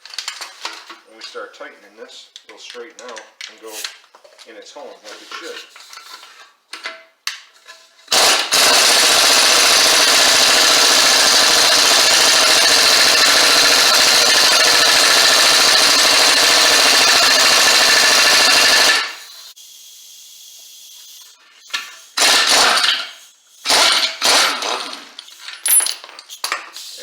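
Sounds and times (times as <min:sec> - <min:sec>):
power tool running: 0:08.1 - 0:19.5, 0:22.2 - 0:23.0, 0:23.7 - 0:24.9.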